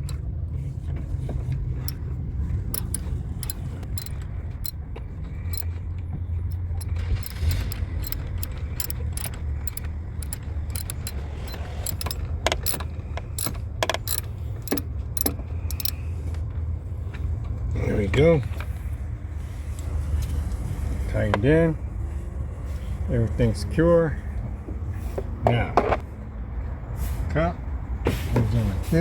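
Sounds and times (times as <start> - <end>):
small metal clinks: 1.8 - 5.8, 6.4 - 16.0
ratchet clicking: 2.7 - 4.8, 5.4 - 5.8, 6.5 - 16.0.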